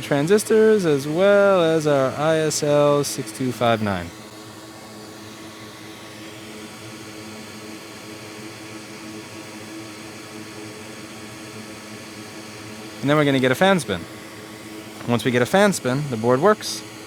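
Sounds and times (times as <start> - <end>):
faint even hum: 0.0 - 4.3.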